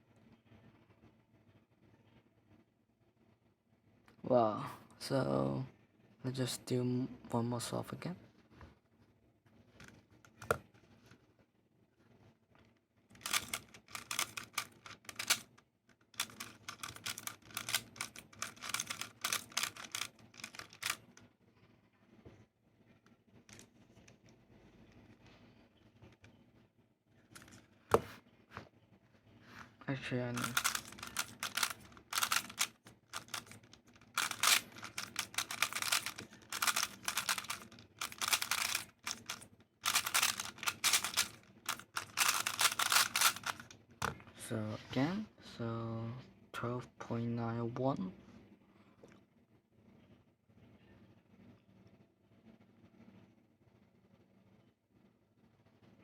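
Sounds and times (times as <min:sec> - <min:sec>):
puzzle cube clicking: 0:13.2 - 0:15.4, 0:16.2 - 0:21.1, 0:30.4 - 0:43.7.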